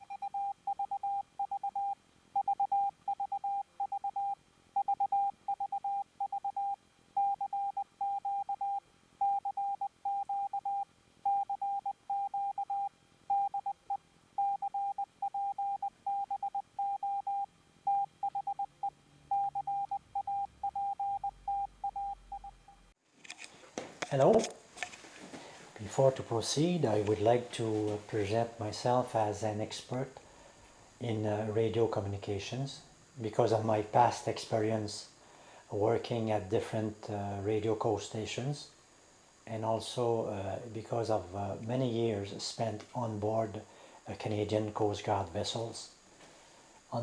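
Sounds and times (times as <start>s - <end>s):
morse code tone: 14.4s - 22.9s.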